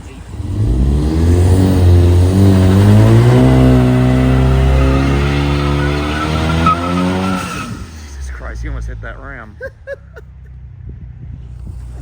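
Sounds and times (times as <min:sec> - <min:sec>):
engine revving hard: 0:00.3 - 0:08.5.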